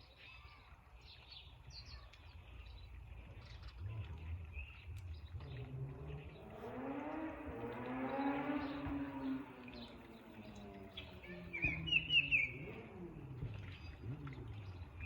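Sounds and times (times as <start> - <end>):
small birds chirping: 0.0 - 15.0
low background rumble: 2.2 - 7.9.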